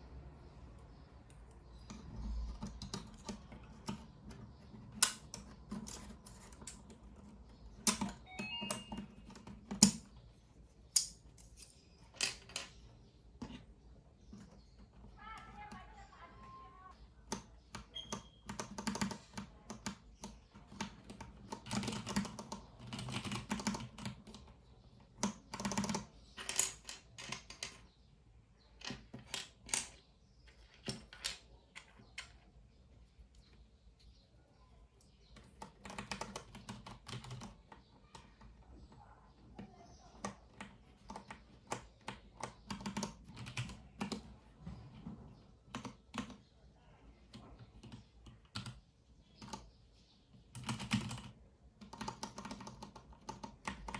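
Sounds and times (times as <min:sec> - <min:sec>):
typing on mechanical keyboard: 0:01.0 - 0:10.2, 0:17.2 - 0:26.4, 0:35.4 - 0:44.4, 0:45.6 - 0:46.5, 0:47.3 - 0:49.7, 0:50.4 - 0:53.9.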